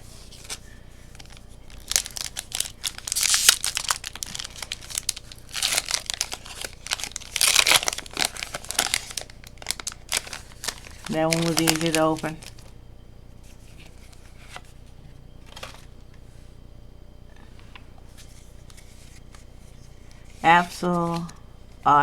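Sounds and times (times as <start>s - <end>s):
foil wrapper tearing and crinkling: 0.0s - 12.7s.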